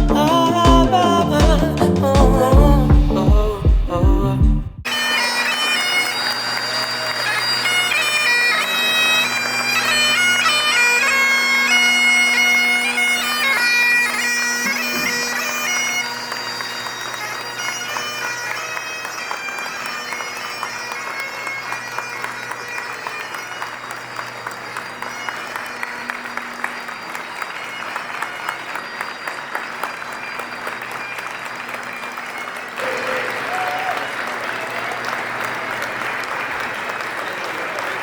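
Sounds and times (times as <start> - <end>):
bagpipes playing a tune: 4.8 - 37.9.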